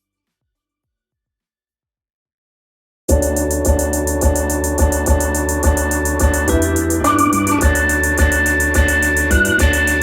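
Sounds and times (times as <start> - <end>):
faint background music with beat: 3.1 - 10.0.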